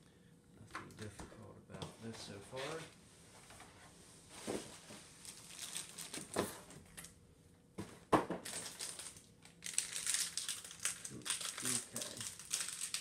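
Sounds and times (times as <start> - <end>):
packaging rustling: 5.2 - 7.1, 8.4 - 13.0.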